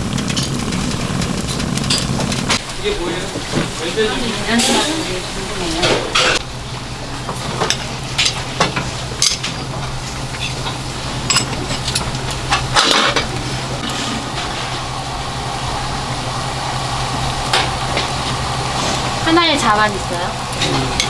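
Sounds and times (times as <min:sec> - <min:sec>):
steady low hum: 0:00.0 - 0:21.0
dishes and utensils clinking: 0:01.9 - 0:06.4, 0:07.2 - 0:14.8.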